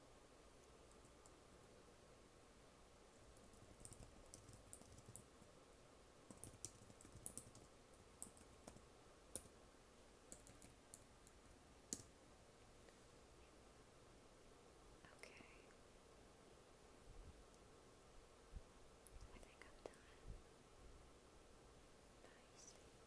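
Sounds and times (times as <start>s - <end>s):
computer keyboard typing: 3.3s - 5.3s, 6.3s - 8.8s, 10.3s - 12.1s.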